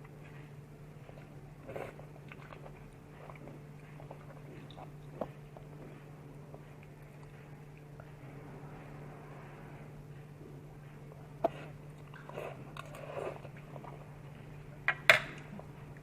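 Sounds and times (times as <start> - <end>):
low steady hum: 0.0 - 16.0
person chewing: 1.1 - 7.9.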